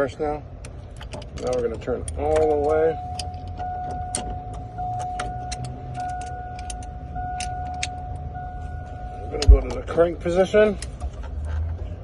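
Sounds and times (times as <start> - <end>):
metallic clicks and key rattles: 0.6 - 4.4, 5.0 - 8.0
high-pitched electronic warning tone: 2.9 - 9.4.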